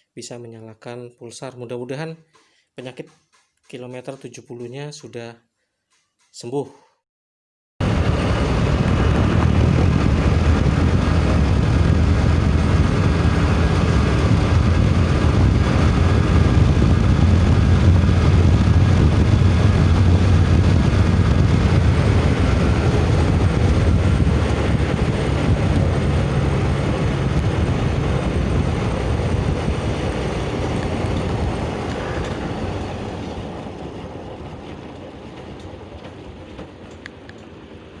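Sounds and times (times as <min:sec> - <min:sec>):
motorcycle engine hum: 0:07.8 - 0:38.0
wind and road noise: 0:07.8 - 0:38.0.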